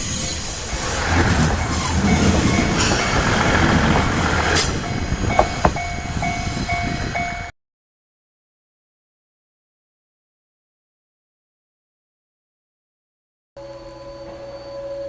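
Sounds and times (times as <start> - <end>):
crossing warning bell tone: 0.0 - 7.5, 13.6 - 15.0
diesel railcar rumbling on rails: 0.0 - 7.5, 13.6 - 15.0.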